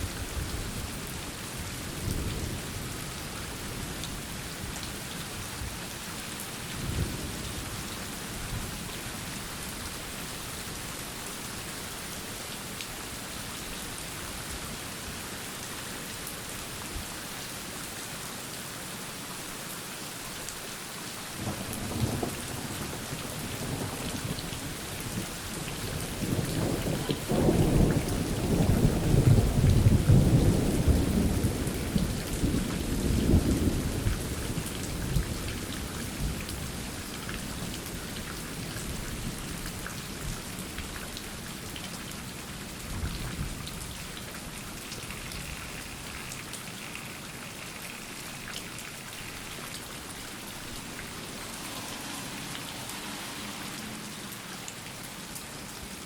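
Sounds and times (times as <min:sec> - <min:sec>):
steady rain falling: 0:00.0 - 0:56.0
thunder rumbling: 0:21.4 - 0:25.2, 0:25.8 - 0:35.4.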